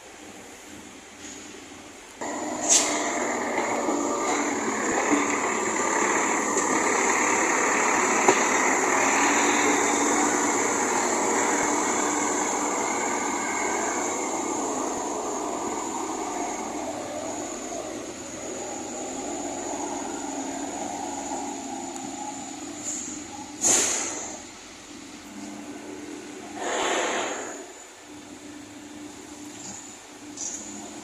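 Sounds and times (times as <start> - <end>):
diesel engine running: 2.2 - 31.0.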